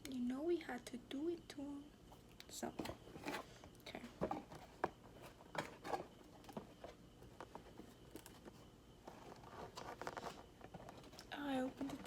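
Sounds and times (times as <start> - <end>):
packaging clicks scrapes and rustles: 4.2 - 12.0.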